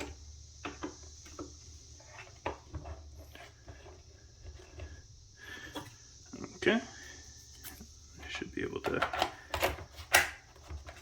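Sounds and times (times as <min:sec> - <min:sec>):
plastic parts clicking and knocking: 0:00.0 - 0:04.9, 0:08.2 - 0:11.0
faint steady hum: 0:00.0 - 0:11.0.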